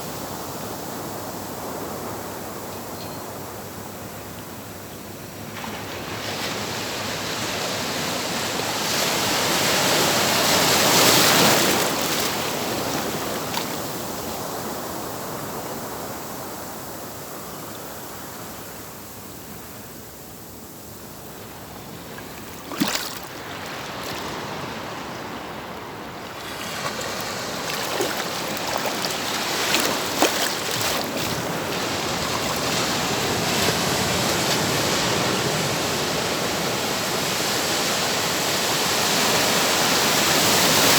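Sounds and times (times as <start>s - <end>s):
waves breaking and washing in: 0.0s - 40.9s
small crackles of surf: 5.5s - 15.0s, 21.2s - 40.9s.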